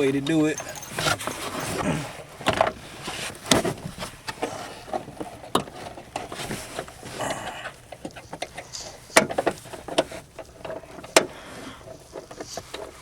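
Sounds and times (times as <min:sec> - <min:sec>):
rustling: 0:00.5 - 0:13.0
knocks and clicks of seat belt: 0:03.4 - 0:13.0.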